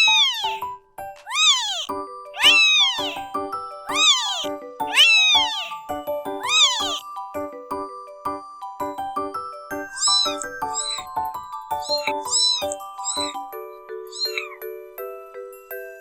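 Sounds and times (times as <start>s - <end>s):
kitten mewing: 0.0s - 3.3s, 3.9s - 5.8s, 6.4s - 7.0s, 9.9s - 11.1s, 11.7s - 13.4s, 14.1s - 14.6s
light tinkling background music: 0.0s - 16.0s.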